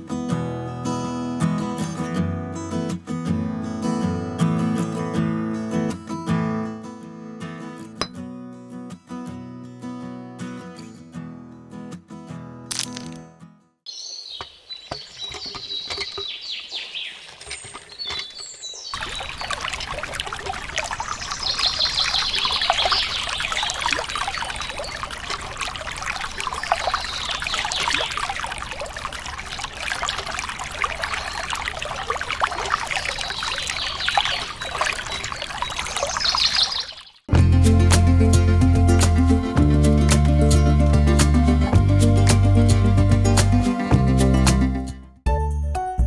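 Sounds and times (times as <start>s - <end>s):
bird chirps: 13.9s - 19.7s, 20.9s - 25.2s, 26.5s - 28.3s, 33.0s - 37.3s
water pouring and trickling: 14.6s - 44.7s.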